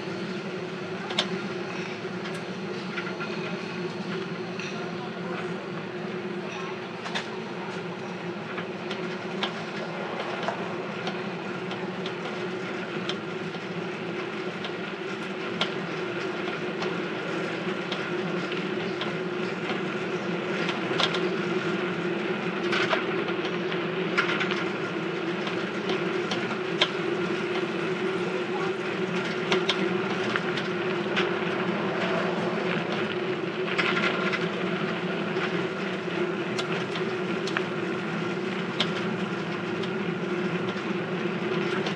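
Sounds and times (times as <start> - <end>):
bicycle drivetrain whirring: 0.0 - 41.9
bicycle clicks and rattles: 8.5 - 41.9.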